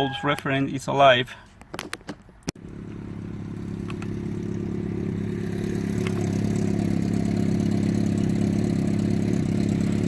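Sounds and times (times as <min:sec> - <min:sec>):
car engine running: 0:02.6 - 0:10.0.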